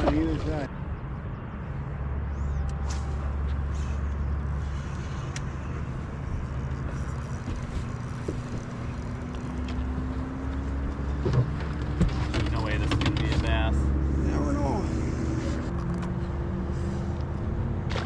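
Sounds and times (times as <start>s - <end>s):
boat motor running: 0.0s - 18.0s.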